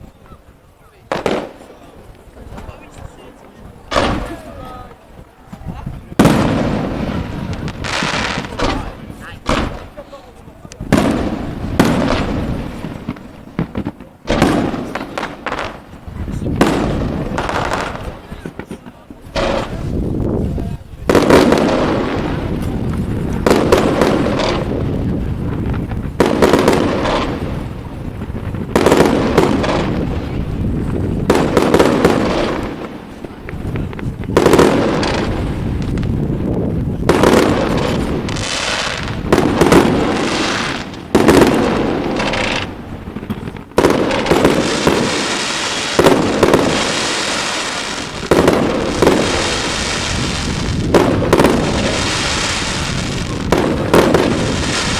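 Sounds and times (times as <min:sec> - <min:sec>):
firework crackling: 0:00.0 - 0:54.9
firework shells bursting: 0:06.2 - 0:10.0, 0:37.0 - 0:54.9.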